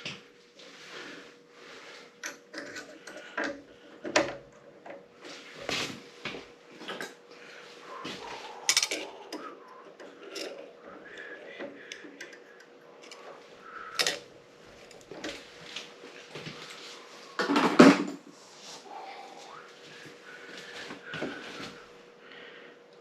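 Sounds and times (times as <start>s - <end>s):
faint steady hum: 0.0s - 23.0s
metallic clicks and clatters of tools: 8.7s - 9.1s, 10.0s - 10.6s, 13.9s - 14.2s.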